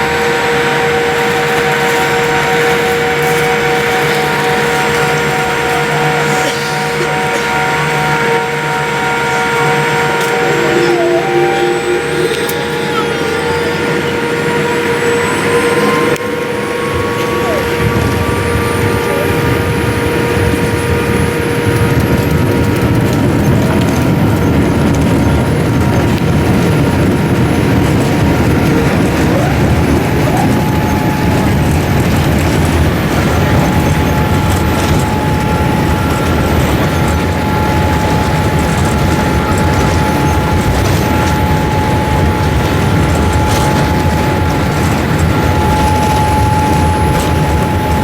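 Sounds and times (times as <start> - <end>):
jet engines rumbling in cabin: 0.0 - 48.0
thin steady whine: 0.0 - 48.0.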